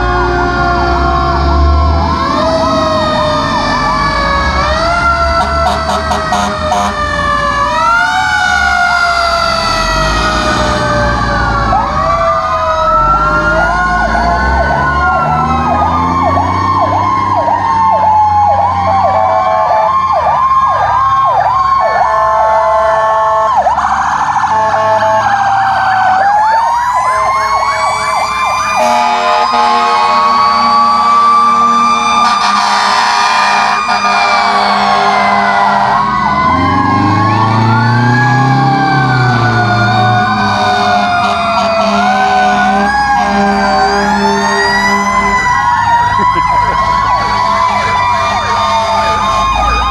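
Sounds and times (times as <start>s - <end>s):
fast warbling siren yelp: 0.0s - 49.9s
fire truck sirens wailing: 0.0s - 49.9s
steady horn blare: 5.3s - 7.2s, 28.8s - 36.1s, 40.5s - 48.6s.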